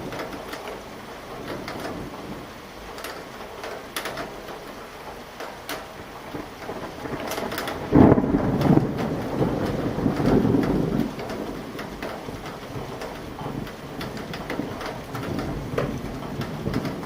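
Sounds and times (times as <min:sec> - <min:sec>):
raindrops ticking on surface: 0:00.0 - 0:17.0
steady rain: 0:00.0 - 0:17.0
thunder clap and rumble: 0:00.0 - 0:17.0.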